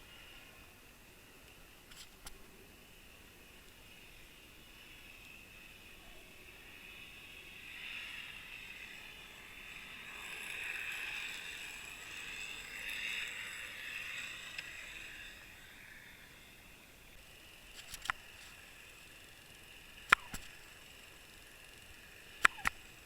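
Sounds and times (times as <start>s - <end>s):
sharp clicks: 17.7s - 18.6s, 20.0s - 20.9s, 22.4s - 23.0s.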